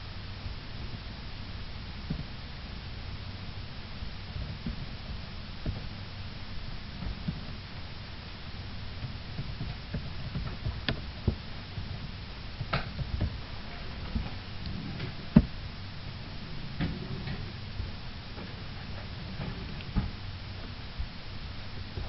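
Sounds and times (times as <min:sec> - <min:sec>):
low rumble: 0:00.0 - 0:22.0.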